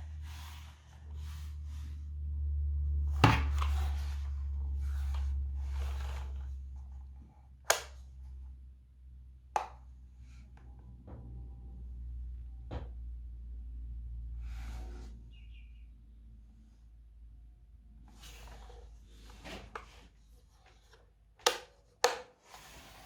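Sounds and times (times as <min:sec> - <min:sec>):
low hum: 0:00.0 - 0:09.4.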